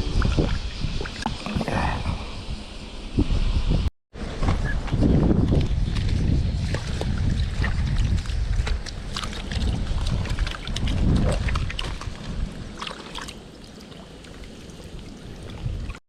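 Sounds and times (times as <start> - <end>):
wind rumbling on microphone: 0.0 - 16.0
river trickling and splashing: 6.6 - 16.0.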